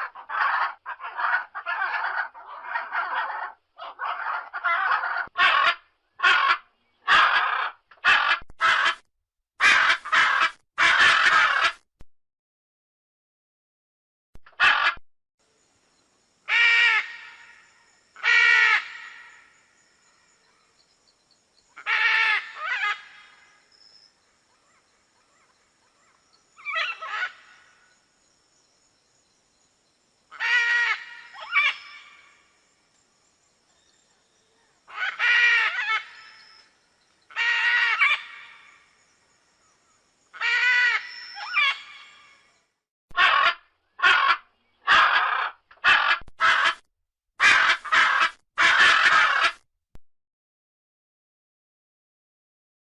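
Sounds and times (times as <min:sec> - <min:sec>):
macaw squawking: 0:00.0 - 0:09.0, 0:09.6 - 0:11.8, 0:25.4 - 0:27.6, 0:30.4 - 0:32.3, 0:37.3 - 0:38.7, 0:40.4 - 0:42.2, 0:43.1 - 0:46.8, 0:47.4 - 0:49.6.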